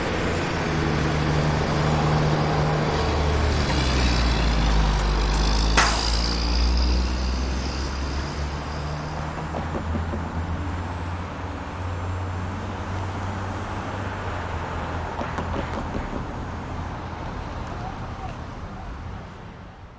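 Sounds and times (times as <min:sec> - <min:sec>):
street noise: 0:00.0 - 0:19.9
vehicle engine humming: 0:00.0 - 0:19.9
sharp clack with high ring: 0:05.7 - 0:08.9.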